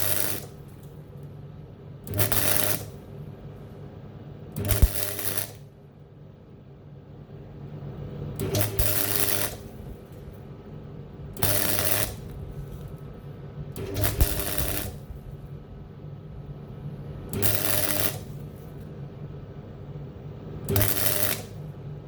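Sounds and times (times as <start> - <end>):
welding arc crackling: 0.0 - 1.0, 2.1 - 3.2, 4.6 - 5.7, 8.3 - 10.4, 11.2 - 15.6, 17.1 - 19.0, 20.5 - 21.8
steady low hum: 0.0 - 22.0.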